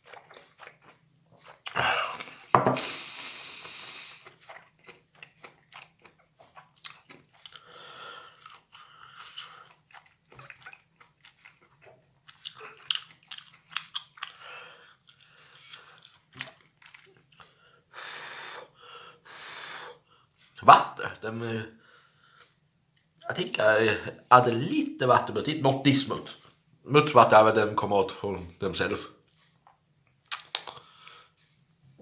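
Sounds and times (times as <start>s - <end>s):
person chewing: 0.0s - 17.8s, 29.3s - 31.6s.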